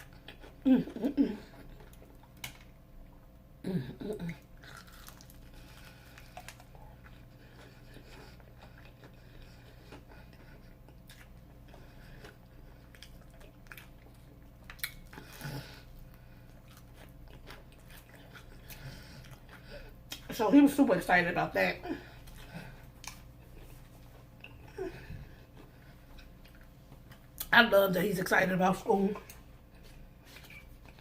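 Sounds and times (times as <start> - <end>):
crunchy food chewing: 4.3 - 20.3, 22.2 - 27.5.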